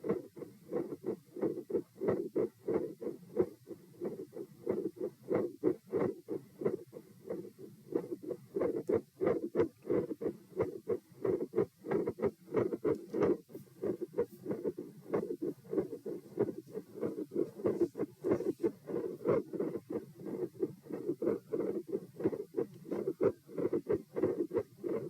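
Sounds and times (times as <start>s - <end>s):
heartbeat through stethoscope: 0.0s - 25.0s.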